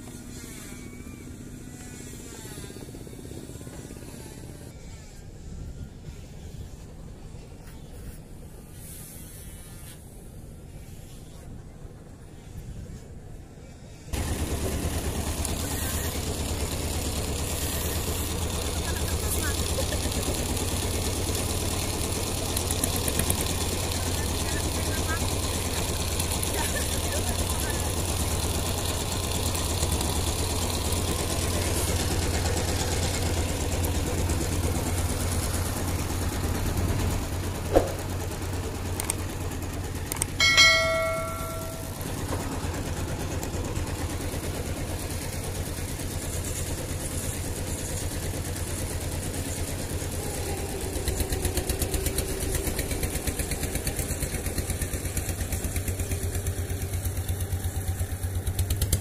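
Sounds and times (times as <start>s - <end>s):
small engine running: 0.0s - 11.4s, 13.8s - 59.0s
short metallic ring: 40.4s - 42.2s.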